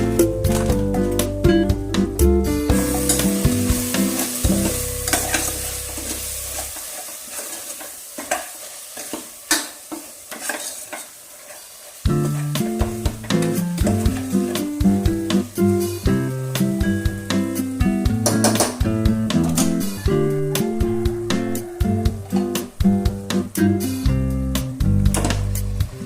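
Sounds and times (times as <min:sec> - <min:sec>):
background music: 0:00.0 - 0:06.6, 0:12.1 - 0:26.0
food sizzling in a pan: 0:02.5 - 0:26.0
spatula scraping a pan: 0:03.8 - 0:12.6.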